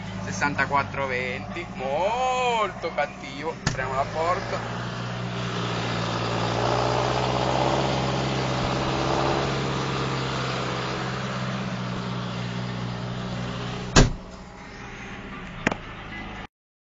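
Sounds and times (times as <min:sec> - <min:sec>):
tractor diesel engine running: 0:00.0 - 0:16.5
cab door banging shut: 0:03.6 - 0:03.9, 0:13.9 - 0:14.4.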